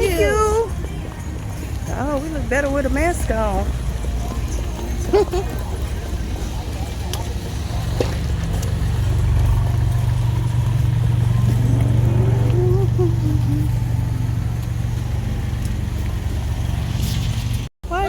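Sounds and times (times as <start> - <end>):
car interior rumble: 0.0 - 18.0
wavering tone: 11.4 - 14.6.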